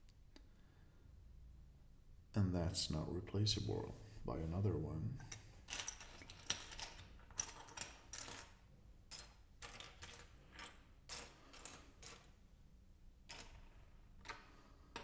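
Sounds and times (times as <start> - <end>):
plastic pieces clicking: 5.7 - 12.3.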